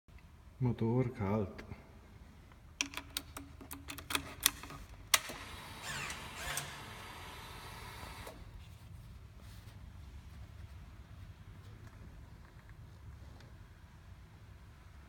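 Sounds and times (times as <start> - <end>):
whirring buzz: 5.2 - 8.4.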